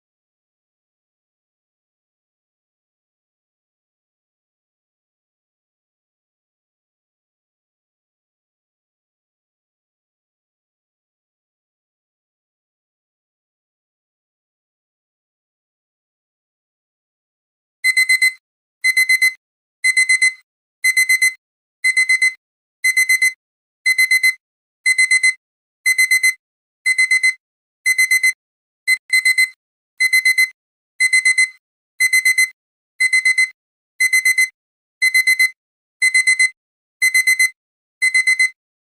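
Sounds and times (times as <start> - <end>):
digital alarm clock beeping: 17.8 - 38.6.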